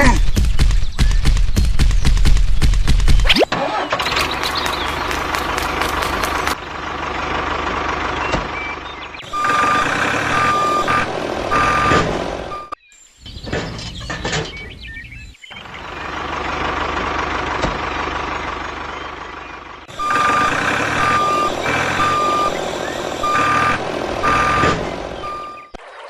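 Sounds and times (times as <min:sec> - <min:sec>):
vehicle engine rumbling: 0:00.0 - 0:26.0
reversing alarm beeps: 0:09.2 - 0:12.8, 0:19.9 - 0:22.6, 0:23.2 - 0:25.8.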